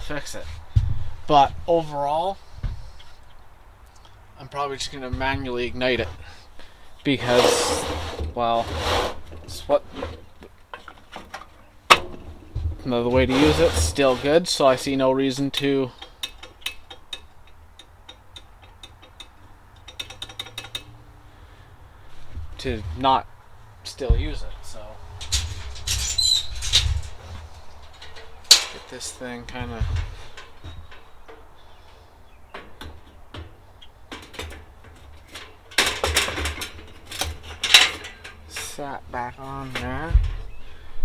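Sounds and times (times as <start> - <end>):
heater parts clicking and knocking: 0.0 - 41.0
busy clatter: 22.2 - 40.5.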